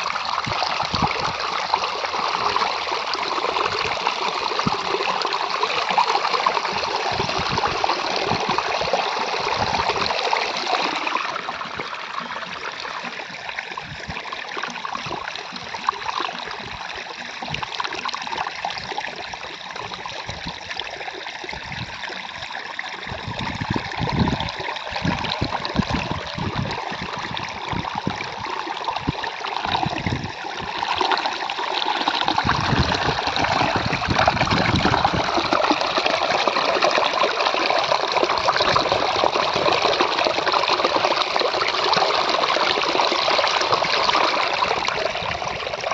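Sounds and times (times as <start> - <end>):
water trickling: 0.0 - 45.9.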